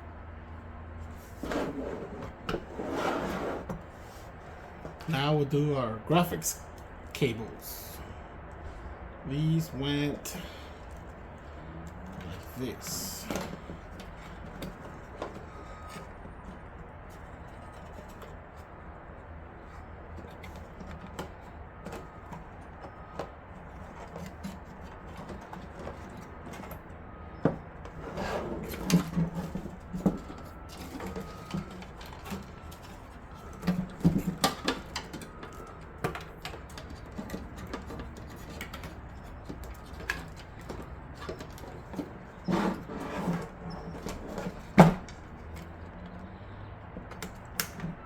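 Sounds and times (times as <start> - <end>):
clicks and knocks of parts: 10.7 - 48.0.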